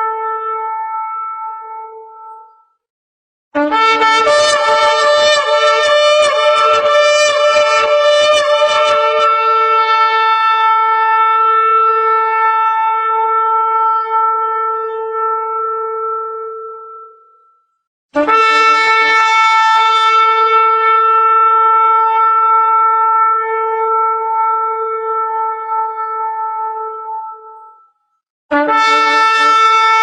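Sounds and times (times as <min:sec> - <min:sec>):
shofar blast: 0:00.0 - 0:02.4, 0:03.6 - 0:17.4, 0:18.2 - 0:27.8, 0:28.5 - 0:30.0.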